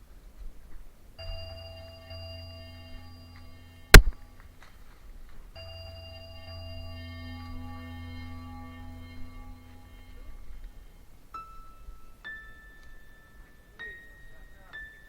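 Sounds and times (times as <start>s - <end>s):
low hum: 1.2s - 4.6s, 5.6s - 11.3s
sharp loud click: 4.0s - 4.2s
bell-like ringing tones: 5.6s - 11.1s.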